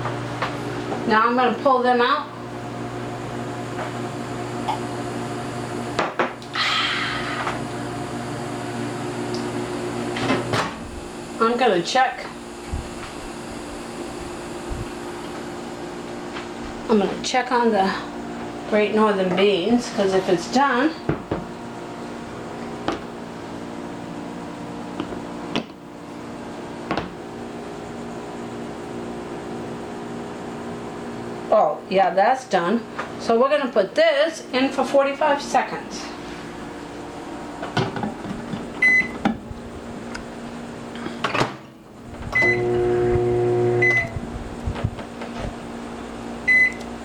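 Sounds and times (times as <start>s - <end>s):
electrical appliance hum: 0.0s - 47.0s
keypad beeps: 38.8s - 39.1s, 46.5s - 46.9s.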